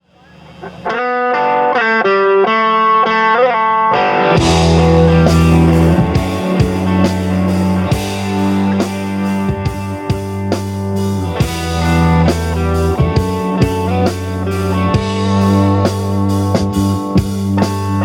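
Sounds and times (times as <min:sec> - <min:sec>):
electric guitar melody: 0:00.3 - 0:18.0
rock band playing: 0:00.5 - 0:18.0.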